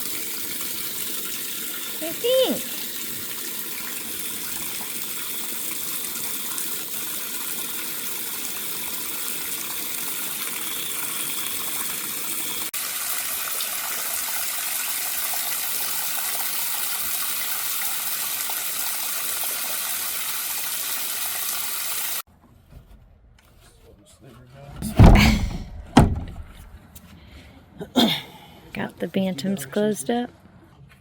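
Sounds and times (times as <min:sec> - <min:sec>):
water spraying from garden hose: 0:00.0 - 0:22.2.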